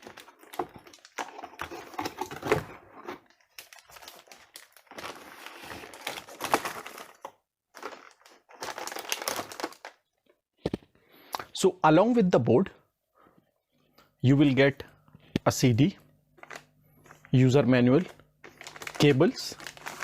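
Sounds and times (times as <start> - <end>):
cardboard packaging rustling: 0.0 - 10.0, 18.0 - 20.0.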